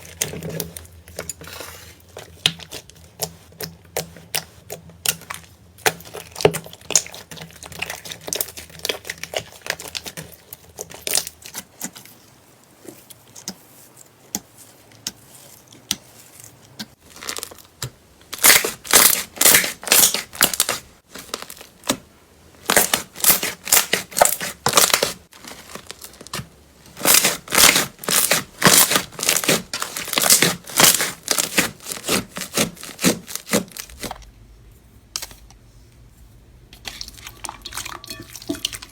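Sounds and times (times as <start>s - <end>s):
crunchy slime crackling: 4.3s - 12.2s, 15.3s - 22.0s, 22.6s - 34.3s.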